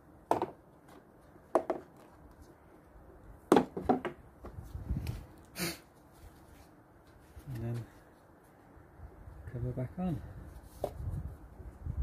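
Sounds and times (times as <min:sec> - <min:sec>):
plastic parts knocking and clattering: 0:00.3 - 0:02.1, 0:03.5 - 0:04.2.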